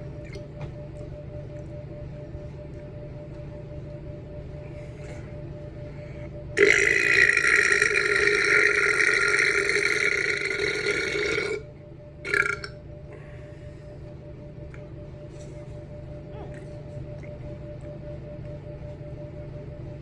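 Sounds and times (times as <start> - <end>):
person burping: 6.6 - 11.6, 12.3 - 12.8.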